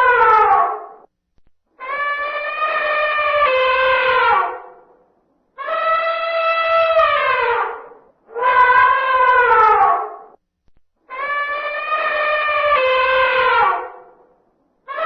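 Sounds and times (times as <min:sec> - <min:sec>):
elephant trumpeting: 0:01.8 - 0:04.8, 0:05.6 - 0:10.4, 0:11.1 - 0:14.1.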